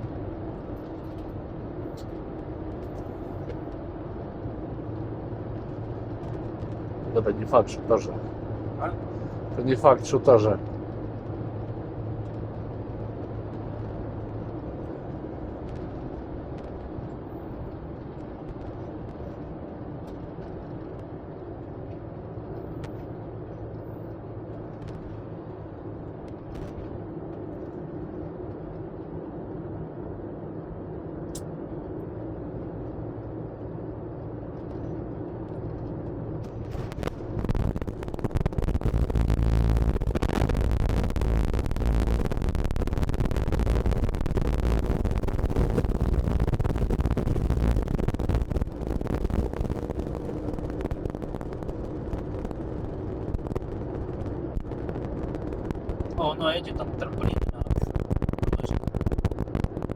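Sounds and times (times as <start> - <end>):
car cabin road noise: 0.0 - 59.9.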